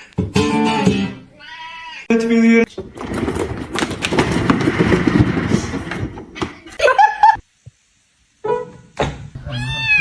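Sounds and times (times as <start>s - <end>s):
cat meowing: 9.4s - 10.0s.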